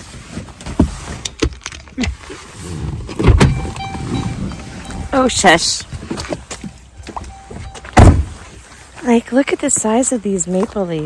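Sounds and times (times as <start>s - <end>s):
person climbing out of a van: 0.0s - 9.0s
thumps: 3.1s - 5.2s, 5.8s - 8.6s.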